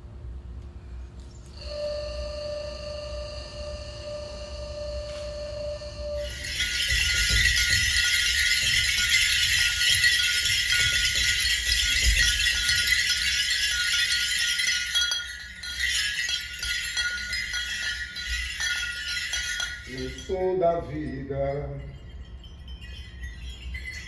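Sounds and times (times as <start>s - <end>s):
jingling percussion shaken: 6.1s - 24.0s.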